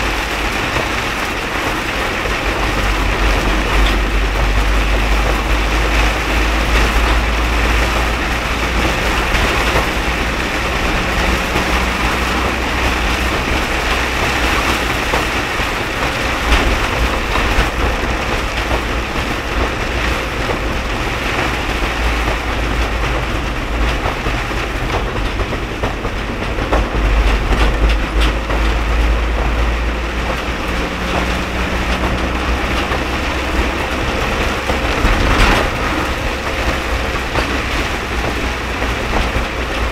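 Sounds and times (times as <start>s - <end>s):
car engine and road rumble: 0.0s - 39.9s
rain on the car: 0.0s - 39.9s
tyres hissing on flooded road: 0.0s - 39.9s.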